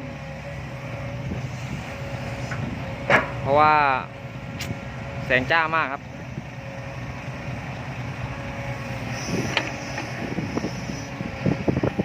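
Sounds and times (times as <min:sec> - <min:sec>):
diesel machinery rumbling: 0:00.0 - 0:12.0
wind on microphone: 0:09.0 - 0:12.0.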